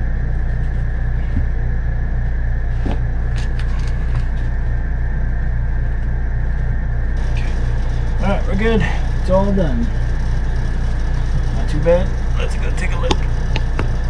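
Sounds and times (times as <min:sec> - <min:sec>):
low mechanical rumble: 0:00.0 - 0:14.0.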